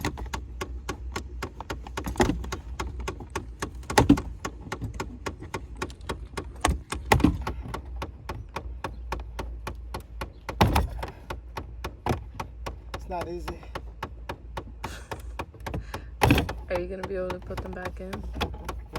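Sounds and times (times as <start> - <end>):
actuator clicking behind dashboard: 0.0 - 18.9
plastic trim thuds: 0.0 - 18.9.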